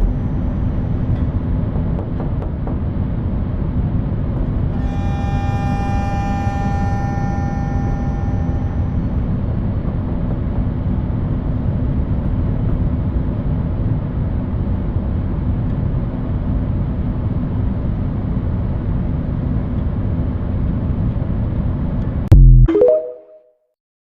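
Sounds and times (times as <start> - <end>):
faint hum: 4.6 - 9.8.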